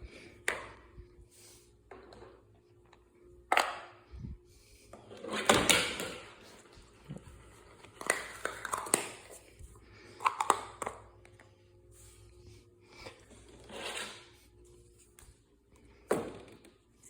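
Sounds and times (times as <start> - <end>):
containers clicking and knocking: 7.9 - 9.4.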